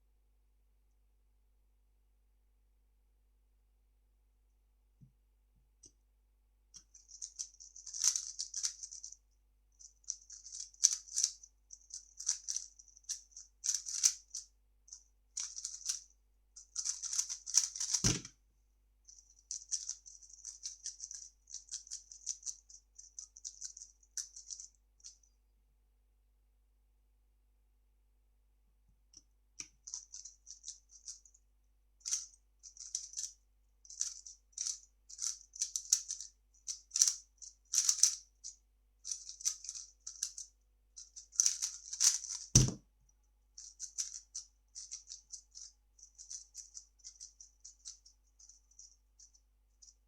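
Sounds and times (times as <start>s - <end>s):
low thump: 42.6s - 42.8s.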